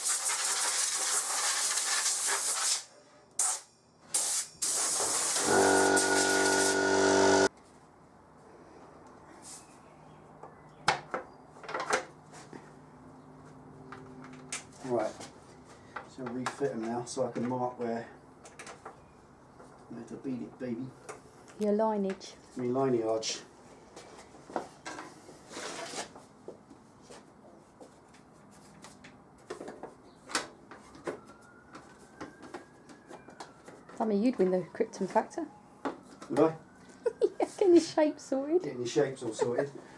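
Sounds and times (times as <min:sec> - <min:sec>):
spray can hissing: 0:00.0 - 0:06.8
scraping rustle: 0:25.2 - 0:29.9.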